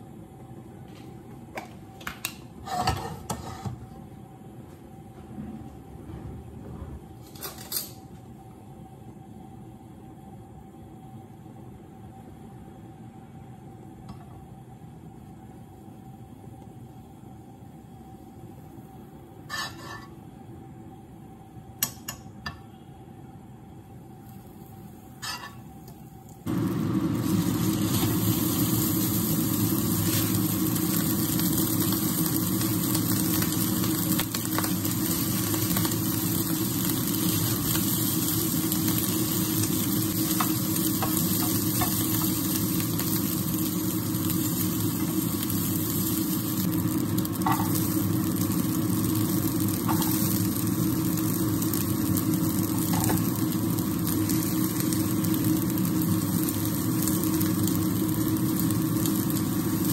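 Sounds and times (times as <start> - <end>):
food sizzling in a pan: 19.4 - 20.3, 24.0 - 59.9
low hum: 22.8 - 57.2.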